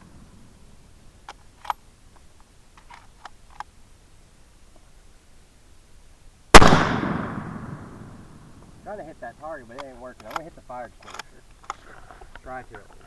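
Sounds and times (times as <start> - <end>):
faint sharp clicks: 9.7 - 13.0.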